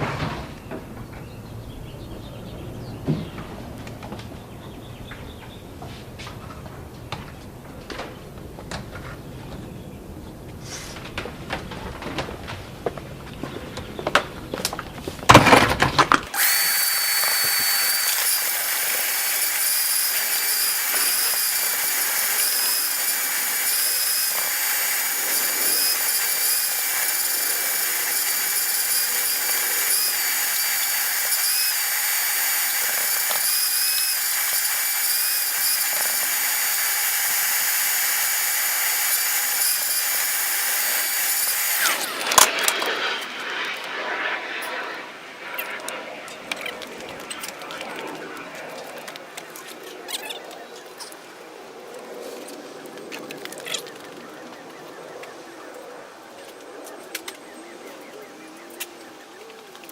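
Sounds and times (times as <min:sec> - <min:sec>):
vacuum cleaner whining: 0:16.3 - 0:44.7.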